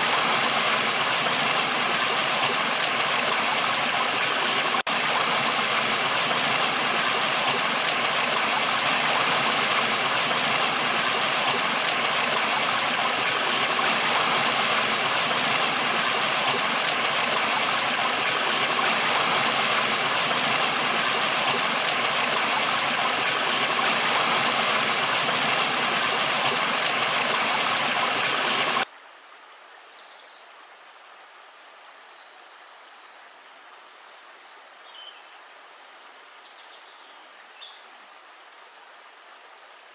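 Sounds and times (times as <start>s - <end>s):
river water rushing: 0.0s - 28.9s.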